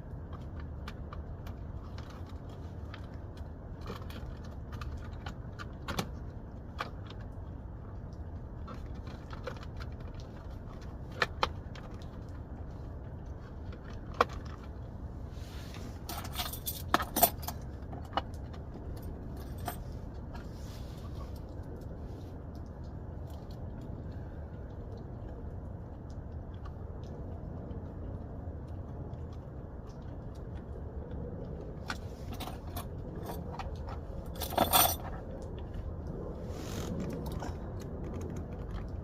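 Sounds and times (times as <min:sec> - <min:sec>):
steady low hum: 0:00.0 - 0:39.0
metallic jingling and rattling: 0:15.8 - 0:20.5, 0:31.9 - 0:35.5.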